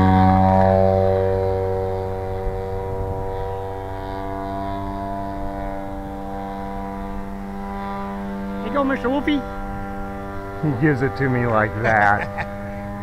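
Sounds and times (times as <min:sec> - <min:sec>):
model plane engine buzzing: 0:00.0 - 0:13.0.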